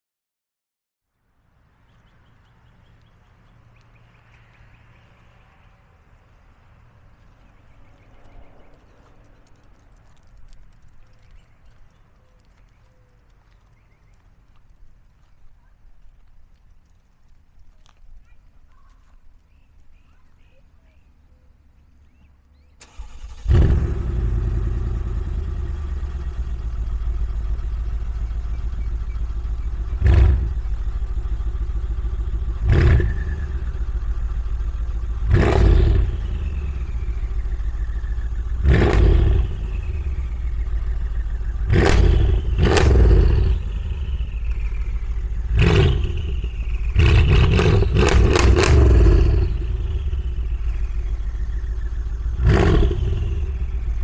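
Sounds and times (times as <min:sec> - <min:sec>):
car engine starting and idling: 0:22.6 - 0:54.0
engine throttle blips: 0:22.6 - 0:54.0.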